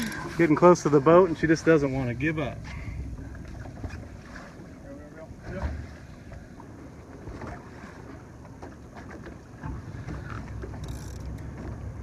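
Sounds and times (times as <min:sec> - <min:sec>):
boat engine low rumble: 0:00.0 - 0:12.0.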